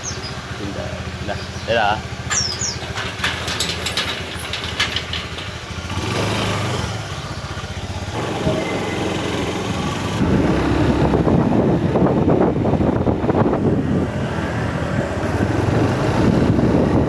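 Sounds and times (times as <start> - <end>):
motorcycle engine running: 0.0 - 14.0
wind rushing over microphone: 8.1 - 17.0.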